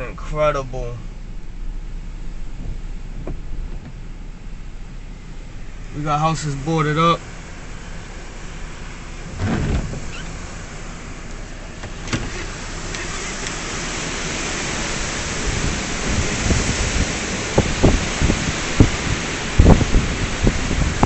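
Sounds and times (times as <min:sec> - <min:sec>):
hurricane wind: 0:00.0 - 0:21.0
rain hissing: 0:00.0 - 0:21.0
wind gusts buffeting microphone: 0:05.4 - 0:21.0.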